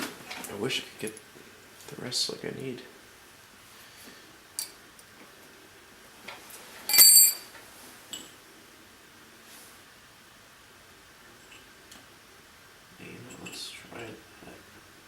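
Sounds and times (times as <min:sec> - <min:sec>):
loud metallic clink: 0:06.9 - 0:07.5.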